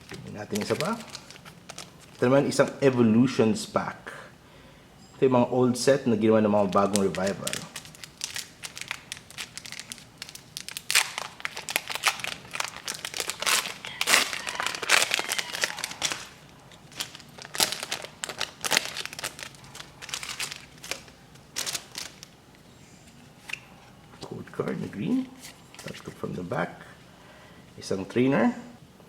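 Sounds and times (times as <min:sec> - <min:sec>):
foil wrapper crinkling and tearing: 0:00.0 - 0:02.8, 0:06.6 - 0:22.4.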